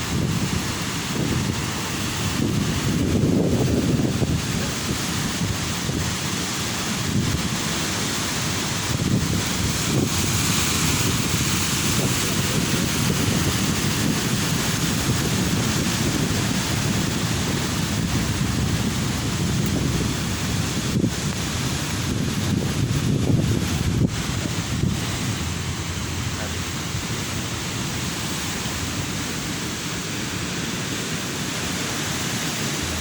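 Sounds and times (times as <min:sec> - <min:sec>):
ocean surf breaking: 0:00.0 - 0:33.0
wind buffeting microphone: 0:00.0 - 0:33.0.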